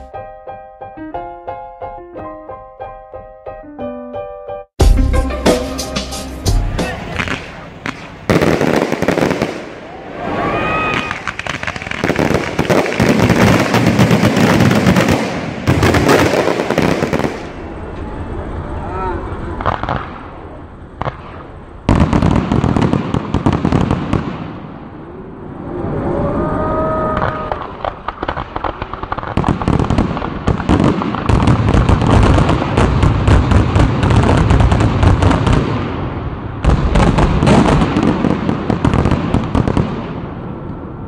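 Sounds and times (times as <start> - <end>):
fireworks crackling volleys: 6.9 - 25.0, 26.2 - 40.6.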